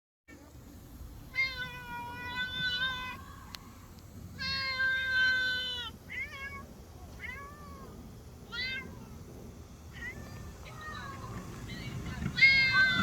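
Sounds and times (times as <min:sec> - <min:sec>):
cat meowing: 0:01.3 - 0:03.2, 0:04.4 - 0:09.1.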